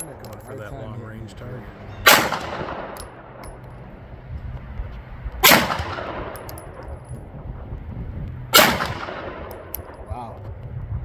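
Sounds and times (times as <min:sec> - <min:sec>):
pistol shot echoing: 0:02.0 - 0:03.6, 0:05.4 - 0:07.0, 0:08.5 - 0:10.1.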